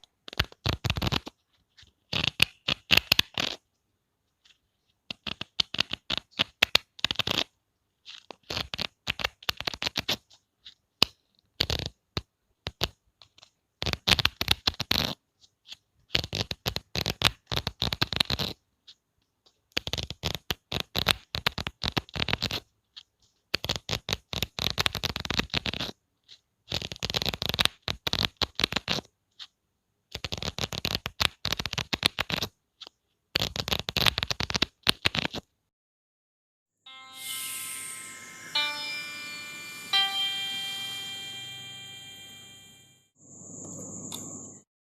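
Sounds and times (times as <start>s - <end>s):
book pages flicking: 0.2s - 1.4s, 5.1s - 7.5s, 30.1s - 35.5s.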